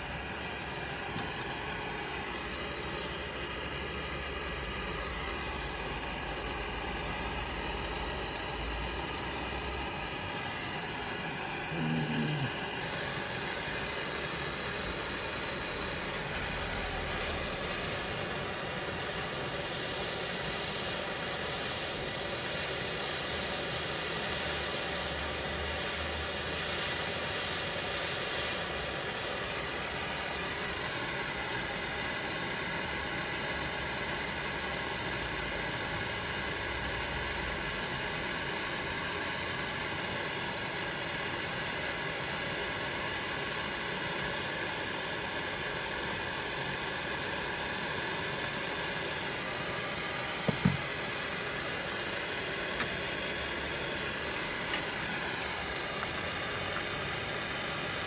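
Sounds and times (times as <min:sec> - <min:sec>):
gas torch hissing: 0:00.0 - 0:58.0
short knock: 0:50.5 - 0:50.8.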